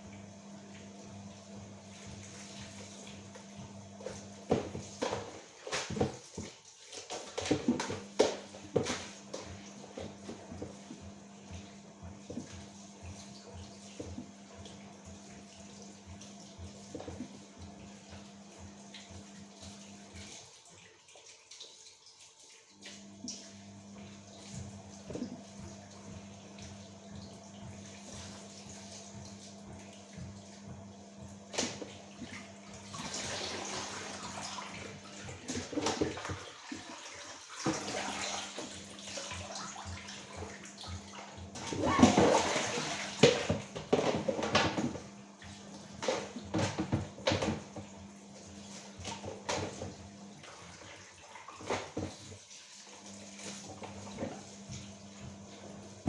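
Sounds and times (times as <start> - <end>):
water running from a tap: 0.1 - 56.0
clinks and knocks of kitchen work: 41.5 - 45.1, 46.0 - 47.8.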